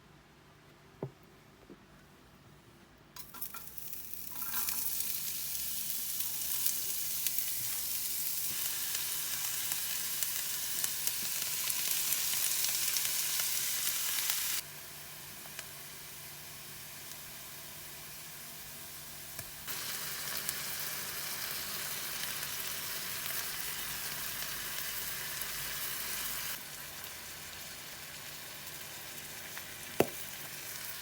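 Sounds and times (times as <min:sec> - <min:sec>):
food sizzling in a hot pan: 0:03.2 - 0:31.0.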